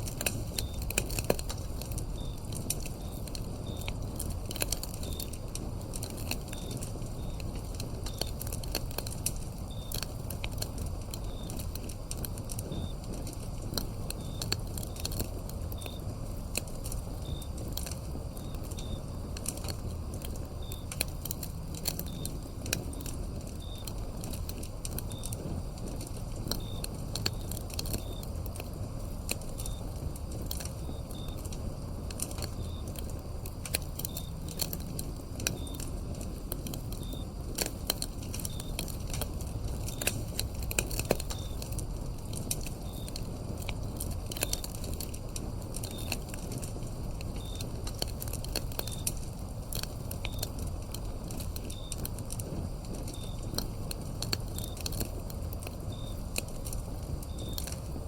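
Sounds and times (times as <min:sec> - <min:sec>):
crickets chirping: 0:00.0 - 0:58.0
wood fire crackling and popping: 0:00.0 - 0:58.0.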